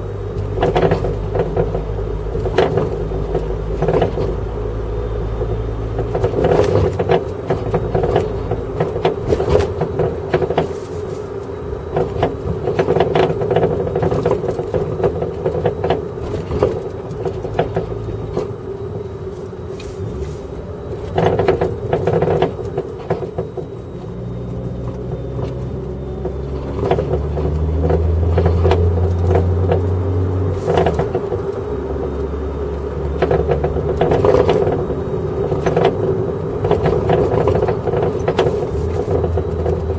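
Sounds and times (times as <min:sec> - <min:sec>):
road and drivetrain drone: 0:00.0 - 0:39.9
suspension knocking and clunking: 0:00.0 - 0:39.9.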